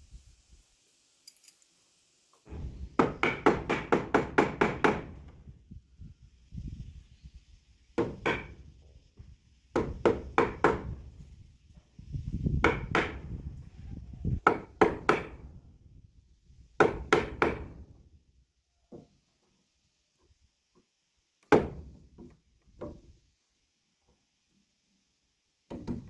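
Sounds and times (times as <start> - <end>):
hammer striking wood: 2.5 - 5.3, 8.0 - 8.6, 9.7 - 11.0, 12.6 - 13.2, 14.4 - 15.4, 16.8 - 17.8, 21.5 - 23.0, 25.7 - 26.0.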